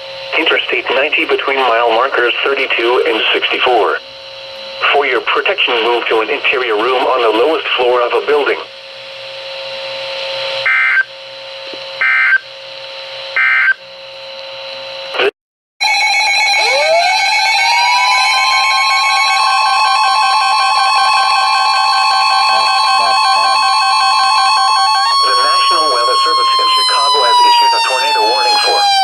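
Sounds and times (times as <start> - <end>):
loud alarm tone sweeping up: 10.6 - 11.1, 12.0 - 12.4, 13.4 - 13.8, 15.8 - 29.0
warbling data tones: 10.6 - 11.1, 12.0 - 12.4, 15.8 - 29.0.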